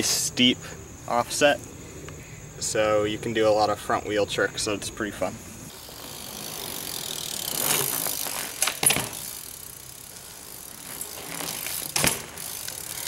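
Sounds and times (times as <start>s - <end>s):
bike freewheel hub ratcheting: 5.7s - 13.0s
sharp knocks from bike handling: 8.6s - 9.2s, 11.9s - 12.4s.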